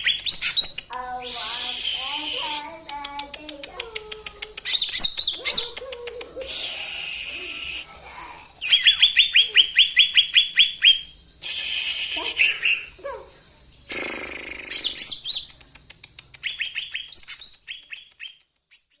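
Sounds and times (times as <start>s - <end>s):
ticking bird notes: 0.0s - 6.4s, 13.8s - 19.0s
harsh rasping bird phrases: 0.0s - 18.1s
songbird chirping: 0.0s - 19.0s.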